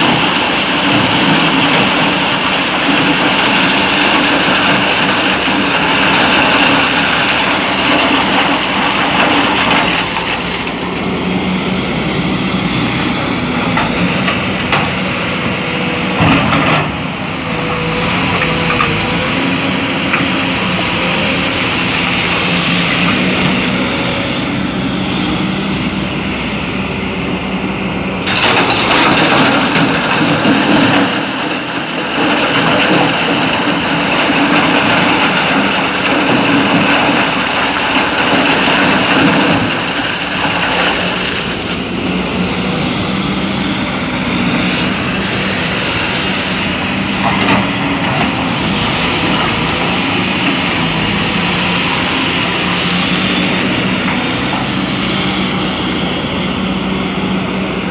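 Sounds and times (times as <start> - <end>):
excavator diesel engine running: 0.0 - 57.9.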